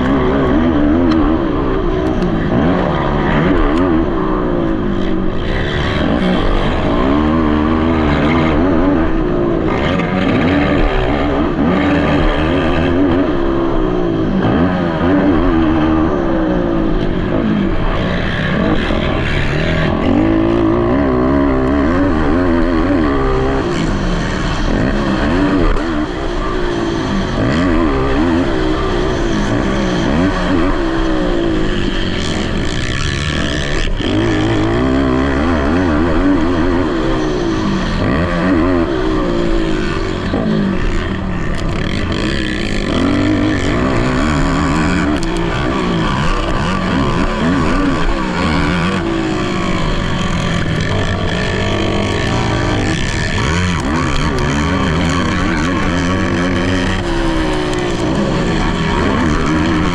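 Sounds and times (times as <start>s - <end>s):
racing quad engines revving: 0.0s - 59.9s.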